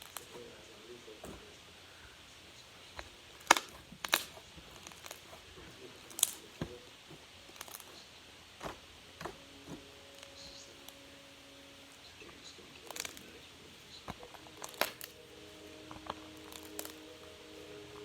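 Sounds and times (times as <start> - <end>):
small objects clicking and tapping: 0.0 - 0.4, 2.9 - 5.4, 6.0 - 11.0, 12.8 - 13.4, 14.0 - 15.2, 15.8 - 17.3.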